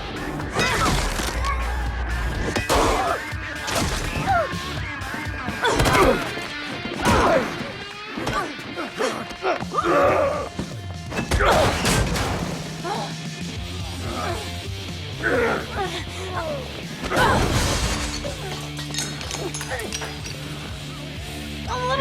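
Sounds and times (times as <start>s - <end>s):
fight scene music: 0.0s - 22.0s
punches hits and crashes: 0.6s - 1.6s, 2.4s - 4.8s, 5.5s - 8.7s, 11.0s - 12.9s, 17.0s - 20.4s.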